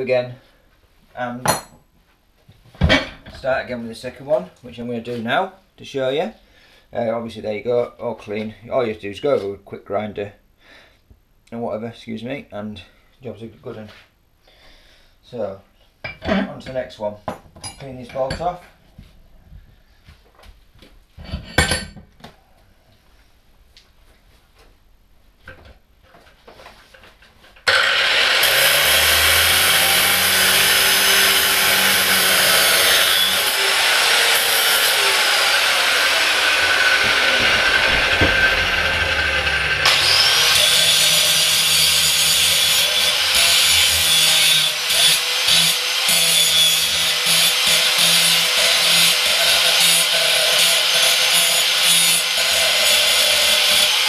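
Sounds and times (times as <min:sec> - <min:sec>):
handheld grinder grinding metal: 0:27.7 - 0:54.0.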